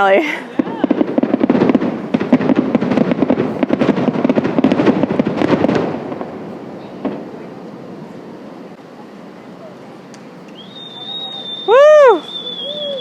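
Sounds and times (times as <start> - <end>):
fireworks bursts and crackles: 0.0 - 13.0.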